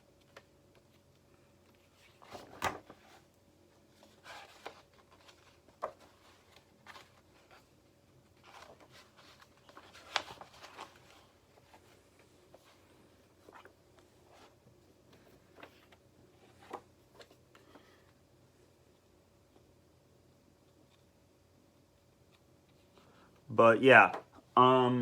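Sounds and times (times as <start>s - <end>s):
rustling of handled object: 0.1s - 18.2s.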